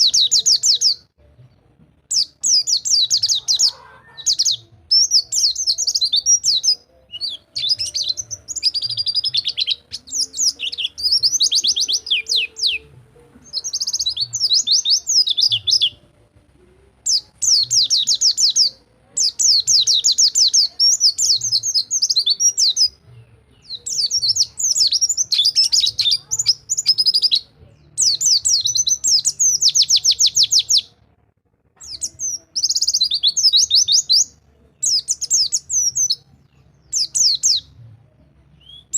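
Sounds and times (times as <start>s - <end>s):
bird singing high trills: 2.1s - 16.1s, 31.8s - 37.7s.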